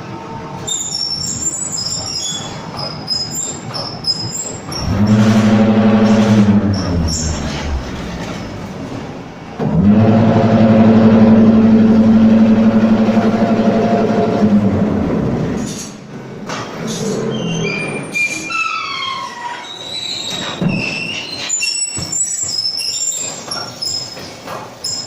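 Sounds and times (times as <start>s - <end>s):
metallic squeals and screeches: 0.6s - 8.6s, 16.9s - 25.0s
mixer drive humming: 4.8s - 15.6s.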